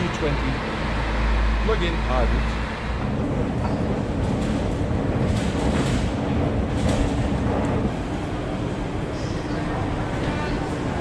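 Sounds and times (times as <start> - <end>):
train rumbling: 0.0 - 11.0
train wheel clacks: 3.0 - 8.0.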